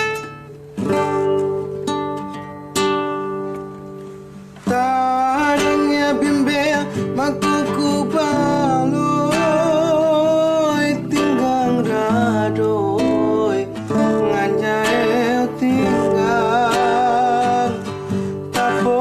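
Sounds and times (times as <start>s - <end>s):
strummed acoustic guitar: 0.0s - 19.0s
person singing with vibrato: 4.6s - 19.0s.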